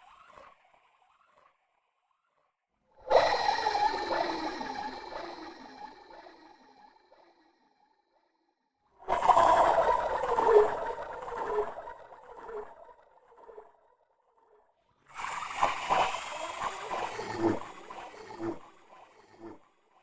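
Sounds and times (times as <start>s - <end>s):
eerie low moaning: 3.1s - 6.6s.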